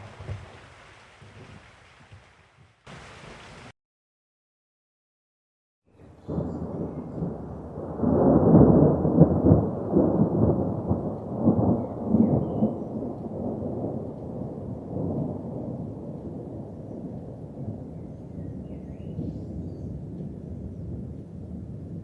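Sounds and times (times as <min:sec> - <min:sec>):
thunder rumbling and cracking: 0:06.2 - 0:22.0.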